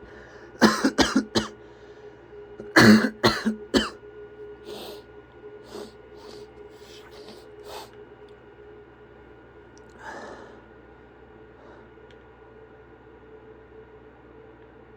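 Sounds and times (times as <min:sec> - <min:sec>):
man coughing: 0:00.6 - 0:01.6, 0:02.6 - 0:04.0
sniffles: 0:04.7 - 0:05.0, 0:05.7 - 0:08.0.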